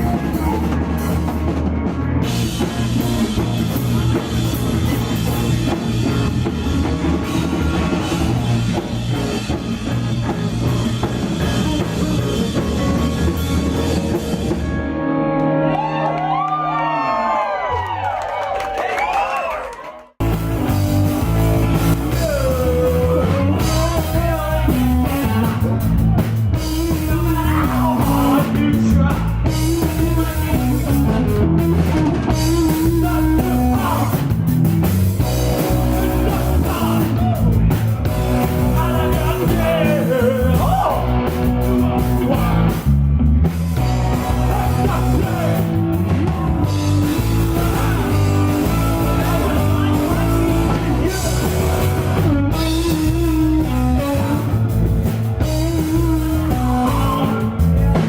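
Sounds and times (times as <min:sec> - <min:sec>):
drum kit: 0:00.0 - 0:17.7, 0:20.1 - 0:58.0
electric guitar: 0:00.0 - 0:17.8, 0:20.2 - 0:58.0
person singing: 0:21.9 - 0:34.3, 0:35.6 - 0:42.9, 0:44.0 - 0:54.7, 0:55.4 - 0:58.0.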